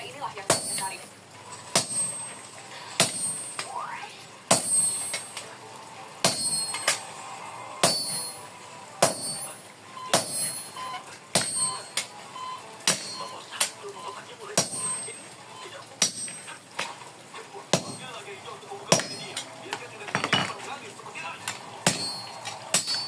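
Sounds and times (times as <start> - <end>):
hammer striking chisel on anvil: 1.7 - 2.2, 3.0 - 3.4, 4.5 - 5.3, 6.2 - 7.0, 7.8 - 8.3, 9.0 - 9.5, 10.1 - 10.6, 11.4 - 11.8, 12.9 - 13.2, 18.9 - 19.4, 21.9 - 23.0.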